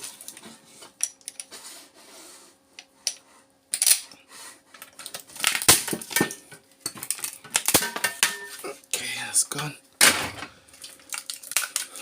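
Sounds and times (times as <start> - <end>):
plastic cracking and snapping: 5.0 - 6.1, 10.8 - 12.0.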